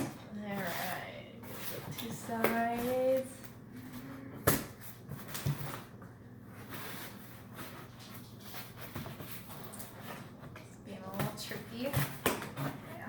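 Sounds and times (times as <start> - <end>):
cardboard rustling: 4.7 - 13.0.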